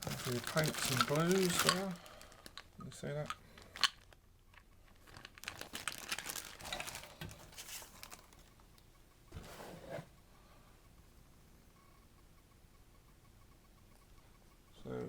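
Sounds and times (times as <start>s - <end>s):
packaging crinkling and rustling: 0.0s - 8.6s.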